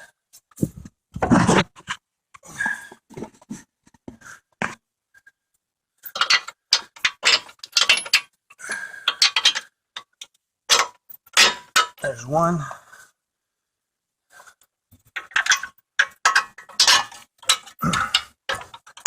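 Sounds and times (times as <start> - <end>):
metal tools clicking and clattering: 6.0 - 8.3, 9.1 - 12.0, 15.1 - 19.0.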